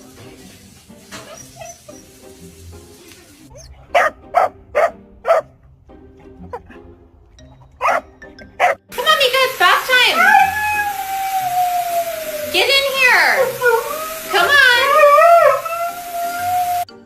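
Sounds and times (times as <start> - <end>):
quiet background music: 0.0 - 17.0
dog barking: 3.6 - 5.6, 7.8 - 16.8.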